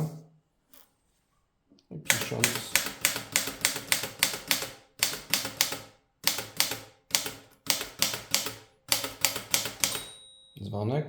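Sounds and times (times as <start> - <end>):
manual typewriter typebar strikes: 2.1 - 10.3.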